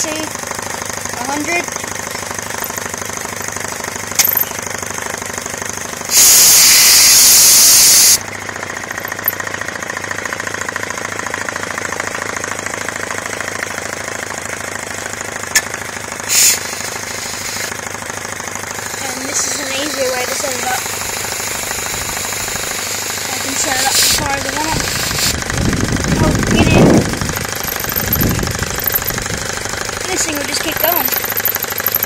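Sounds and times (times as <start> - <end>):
air compressor chugging: 0.0 - 32.0
compressed air hissing: 6.1 - 8.2, 16.2 - 17.8, 18.7 - 26.0
sharp clicks: 23.9 - 29.5.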